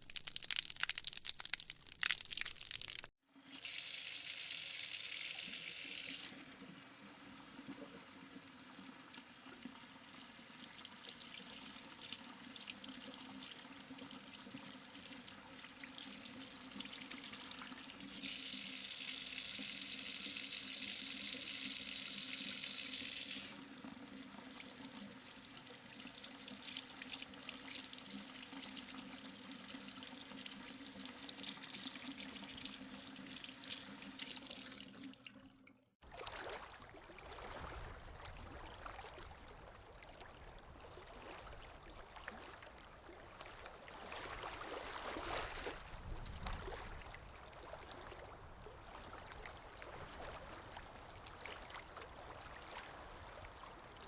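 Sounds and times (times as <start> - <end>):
sink tap gushing: 0.0 - 6.3, 18.1 - 23.6
water splashing and trickling: 0.0 - 53.8.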